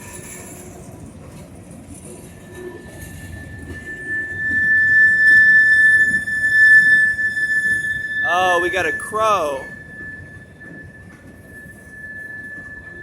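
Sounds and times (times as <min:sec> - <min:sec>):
freight train rumbling: 0:00.0 - 0:13.0
steel wheels squealing on rail: 0:00.0 - 0:13.0.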